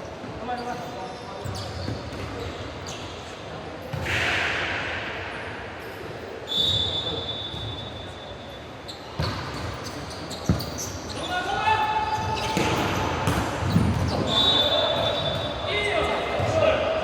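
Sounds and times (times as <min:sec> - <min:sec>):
referee's whistle: 0:06.5 - 0:08.6, 0:14.3 - 0:15.6
ball bouncing on court: 0:09.2 - 0:10.9, 0:12.2 - 0:15.5.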